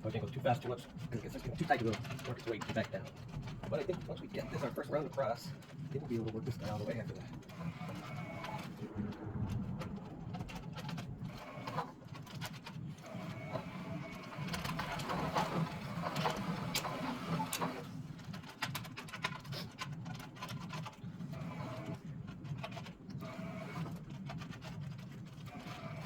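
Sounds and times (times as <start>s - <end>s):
spool turning with low hum: 0.0s - 26.0s
small clicks and rattles: 0.1s - 26.0s.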